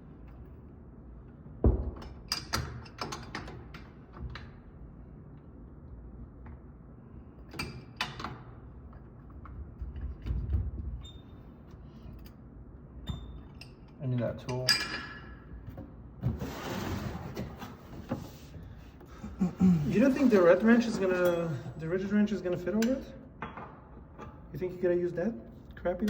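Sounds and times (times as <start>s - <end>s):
knocks and clanks of tools and parts: 22.5s - 24.4s.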